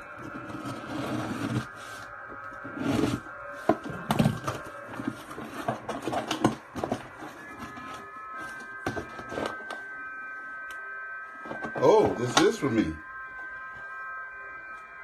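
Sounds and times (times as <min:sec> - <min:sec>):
cardboard box rustling and scraping: 0:00.2 - 0:09.7.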